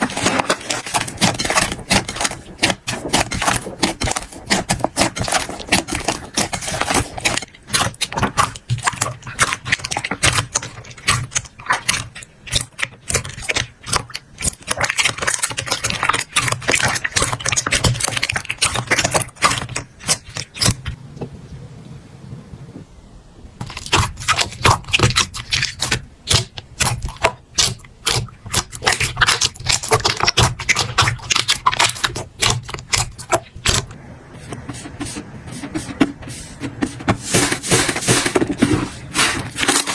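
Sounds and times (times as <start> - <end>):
slime clicking and popping: 23.7 - 33.9.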